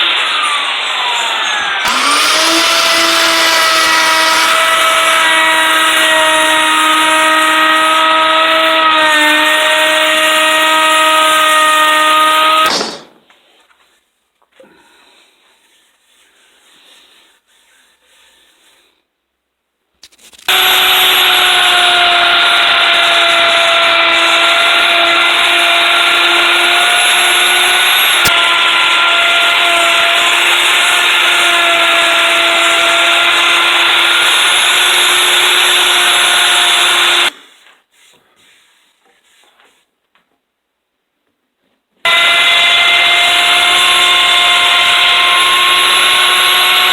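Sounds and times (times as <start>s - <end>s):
power tool cutting wood: 0.0s - 13.2s, 20.5s - 37.4s, 42.1s - 46.9s.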